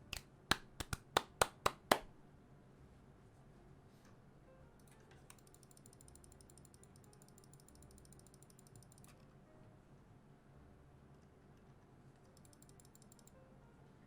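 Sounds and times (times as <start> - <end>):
faint mechanical keyboard typing: 4.8 - 9.4, 11.1 - 13.4.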